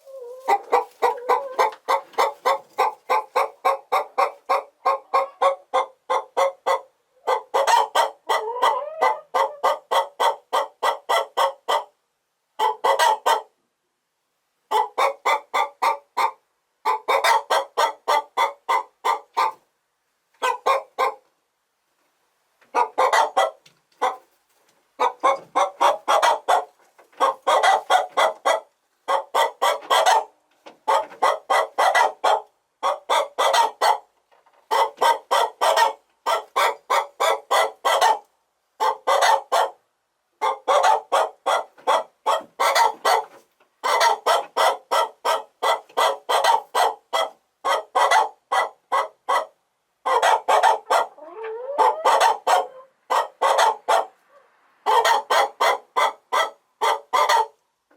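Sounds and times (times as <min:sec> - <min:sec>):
chicken rising call: 0:00.0 - 0:01.8, 0:08.3 - 0:09.7, 0:51.2 - 0:53.0
chickens clucking: 0:00.0 - 0:12.0, 0:12.6 - 0:13.6, 0:14.7 - 0:19.7, 0:20.3 - 0:21.4, 0:22.6 - 0:57.9.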